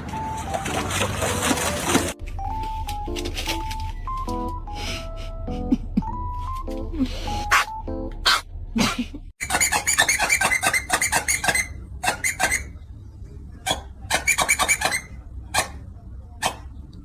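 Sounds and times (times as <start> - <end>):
short high squeaks: 9.4 - 12.8.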